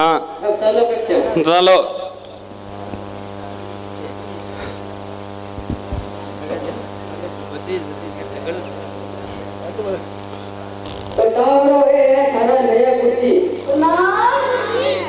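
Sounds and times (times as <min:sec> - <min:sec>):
distant voices: 0:00.0 - 0:15.0
electrical mains hum: 0:00.0 - 0:15.0
faint knocks: 0:05.5 - 0:06.2.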